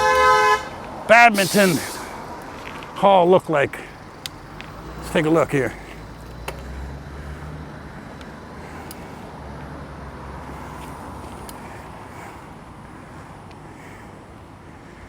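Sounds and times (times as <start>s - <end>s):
street traffic rumble: 0.0s - 15.0s
faint sharp clicks: 8.2s - 9.1s.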